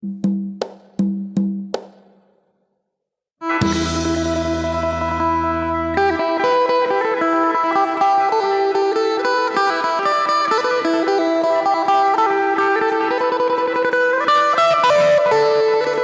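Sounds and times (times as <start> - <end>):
low bass layer: 3.6 - 6.1
plucked lute melody: 3.6 - 16.0.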